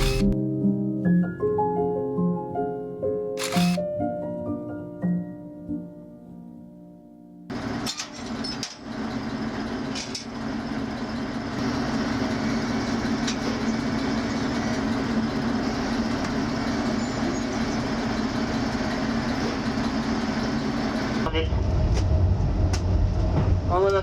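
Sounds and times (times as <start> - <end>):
train running with low hum: 0.0 - 0.4, 7.5 - 24.0.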